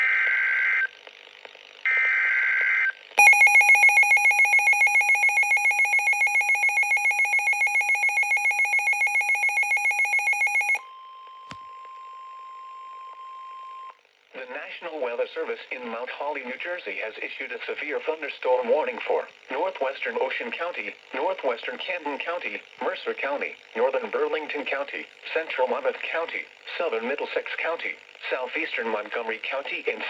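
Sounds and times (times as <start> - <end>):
rapidly pulsing alarm beep: 3.2 - 10.8
steady warning alarm tone: 3.2 - 10.8.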